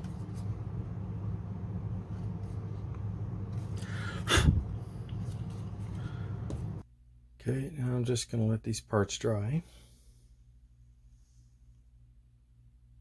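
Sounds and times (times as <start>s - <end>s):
steady low hum: 0.0s - 7.9s
loud breath close to microphone: 3.8s - 4.7s.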